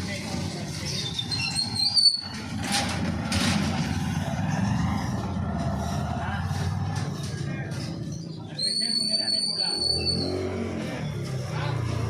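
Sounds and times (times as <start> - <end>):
engine rumbling: 0.0 - 12.0
sharp clatter: 0.7 - 5.2.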